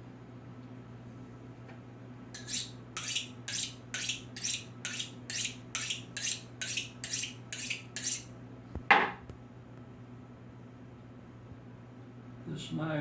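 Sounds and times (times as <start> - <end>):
knife scraping on sharpener: 2.4 - 8.3.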